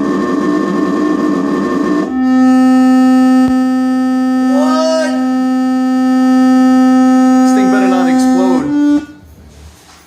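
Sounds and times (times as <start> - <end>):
doorbell wavering buzz: 0.0 - 9.2
droning electronic tone: 0.0 - 9.5.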